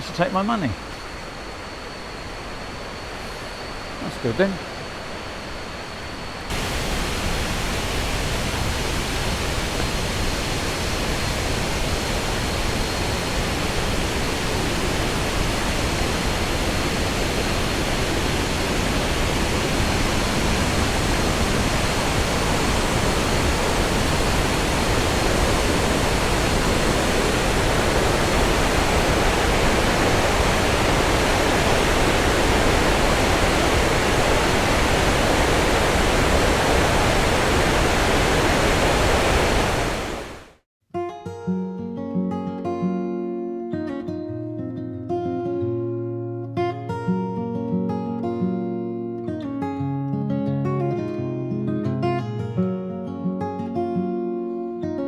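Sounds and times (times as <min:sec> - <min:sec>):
waterfall rushing: 0:06.5 - 0:40.6.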